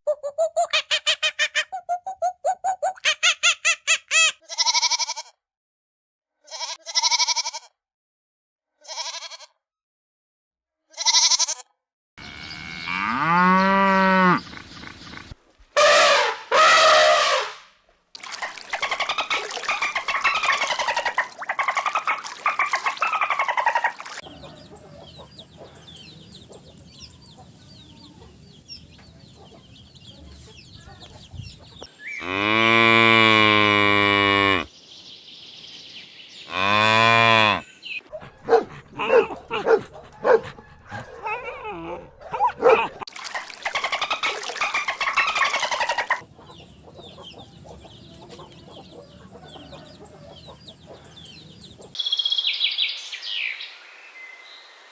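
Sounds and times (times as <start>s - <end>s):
cow mooing: 12.2s - 14.4s, 32.2s - 34.7s, 36.5s - 37.7s
small birds chirping: 18.4s - 32.5s, 34.4s - 41.4s, 43.8s - 53.7s.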